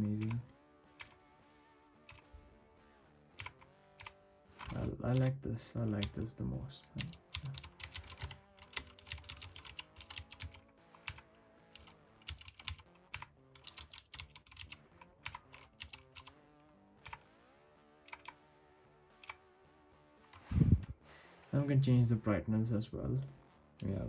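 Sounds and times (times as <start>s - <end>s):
mechanical keyboard clicks: 0.0s - 0.4s, 3.4s - 5.3s, 7.0s - 11.2s, 11.8s - 16.3s, 18.1s - 18.4s.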